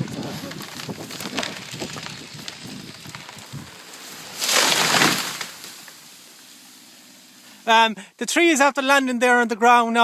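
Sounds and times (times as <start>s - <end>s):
tree cracking and snapping: 0.0s - 6.5s
tree crashing to the ground: 0.0s - 7.2s.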